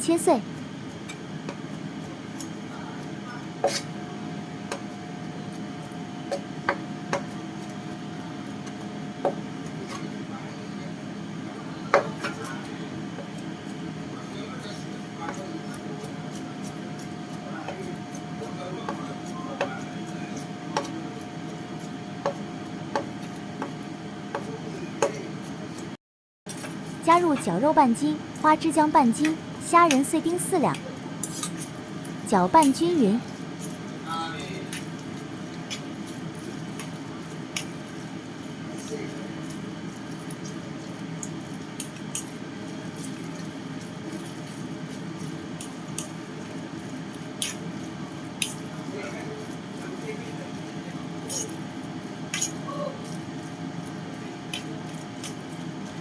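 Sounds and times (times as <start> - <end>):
wet squishing of stirred paste: 33.2 - 56.0.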